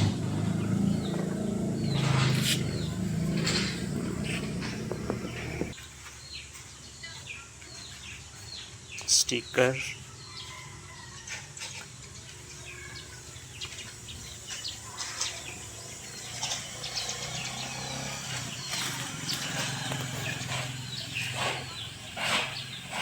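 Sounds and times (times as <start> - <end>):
steady low hum: 0.0 - 5.8
birds chirping: 0.0 - 23.0.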